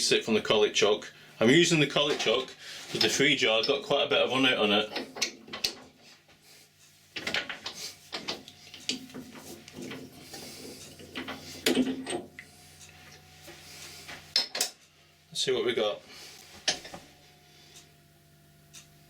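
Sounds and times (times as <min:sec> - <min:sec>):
faint low hum: 0:00.0 - 0:19.0
metal clunks and scrapes: 0:07.2 - 0:14.9, 0:16.6 - 0:17.2.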